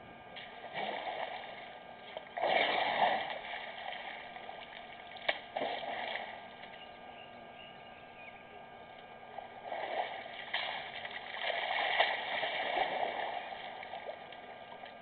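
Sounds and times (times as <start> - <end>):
water gushing and splashing: 2.2 - 4.4, 9.7 - 14.2.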